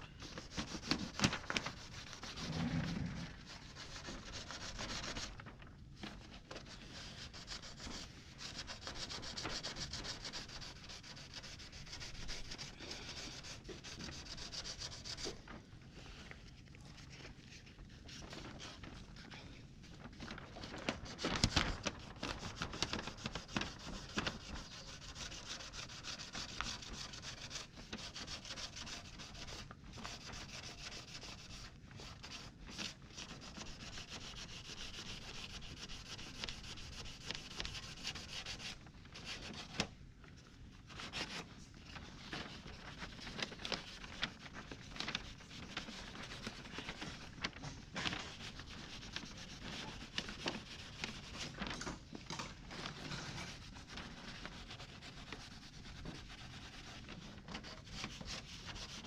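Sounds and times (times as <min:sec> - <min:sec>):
sanding car fender: 0:06.9 - 0:15.2, 0:23.1 - 0:39.5.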